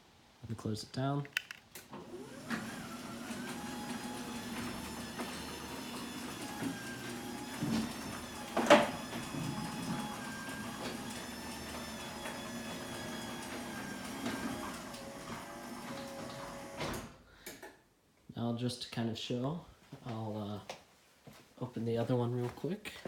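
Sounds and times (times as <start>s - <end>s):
garage door opener humming: 1.9s - 17.2s.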